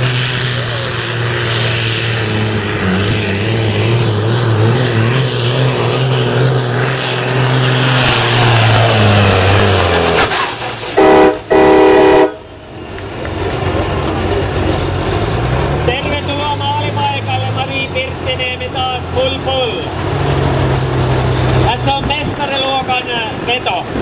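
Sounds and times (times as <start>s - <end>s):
diesel tractor engine under load: 0.0s - 24.0s
loud horn blasts: 11.0s - 12.6s.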